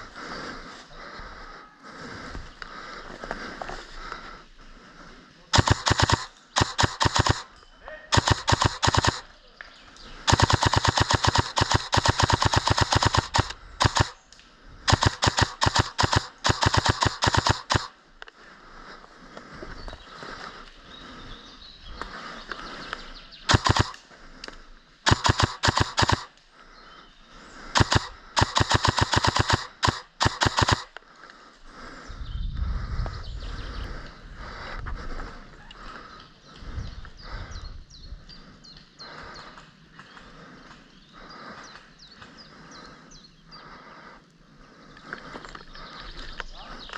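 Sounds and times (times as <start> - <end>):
airsoft gun firing bursts: 5.5 - 9.3, 10.2 - 14.2, 14.8 - 18.0, 23.5 - 24.0, 25.1 - 26.4, 27.7 - 31.0.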